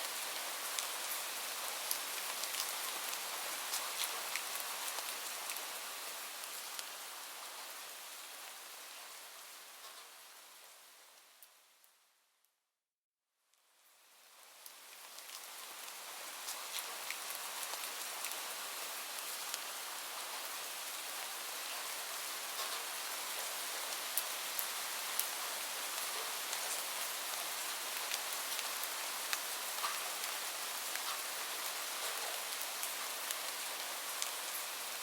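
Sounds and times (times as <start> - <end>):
steady rain falling: 0.0 - 12.3, 13.6 - 35.0
raindrops ticking close by: 14.5 - 20.8, 22.5 - 35.0.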